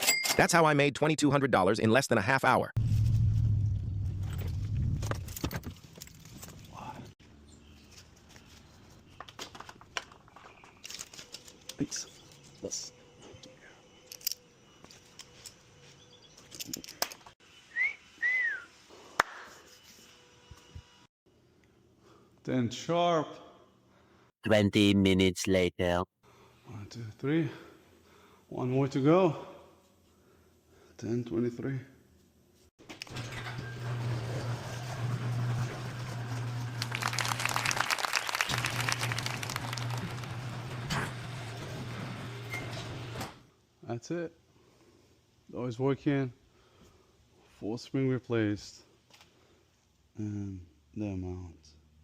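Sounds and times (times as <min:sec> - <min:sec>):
garage door opener motor humming: 0:33.1 - 0:36.8.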